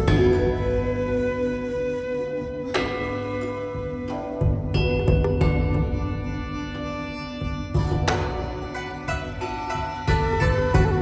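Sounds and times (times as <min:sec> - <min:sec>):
flute-like melody: 0:00.0 - 0:11.0.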